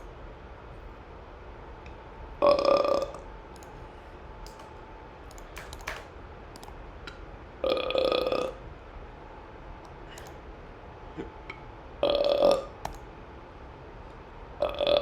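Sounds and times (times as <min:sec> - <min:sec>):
person burping: 0:02.4 - 0:03.2, 0:07.6 - 0:08.6, 0:12.0 - 0:12.7, 0:14.6 - 0:15.0
faint clicks: 0:03.0 - 0:03.8, 0:04.4 - 0:07.2, 0:09.8 - 0:10.4, 0:12.8 - 0:13.1.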